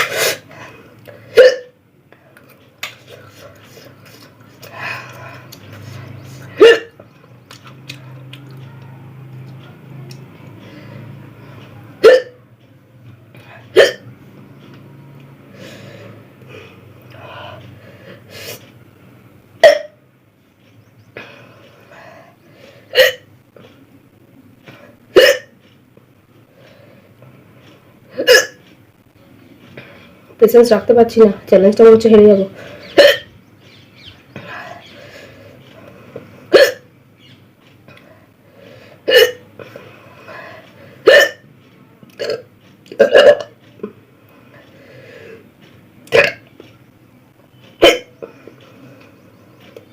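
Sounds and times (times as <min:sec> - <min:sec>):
person hiccuping: 0:01.3 - 0:01.8, 0:06.6 - 0:07.0, 0:12.0 - 0:12.4, 0:13.7 - 0:14.1, 0:19.6 - 0:20.0, 0:22.9 - 0:23.3, 0:25.1 - 0:25.6, 0:28.1 - 0:28.6, 0:33.0 - 0:33.3, 0:36.5 - 0:36.9, 0:39.1 - 0:39.5, 0:41.0 - 0:41.4, 0:42.2 - 0:44.0, 0:46.1 - 0:46.5, 0:47.8 - 0:48.2
faint breathing: 0:10.5 - 0:11.9, 0:15.4 - 0:18.7, 0:21.2 - 0:23.0, 0:26.4 - 0:27.9, 0:29.6 - 0:30.4, 0:34.3 - 0:36.5, 0:37.9 - 0:41.1, 0:44.1 - 0:45.5.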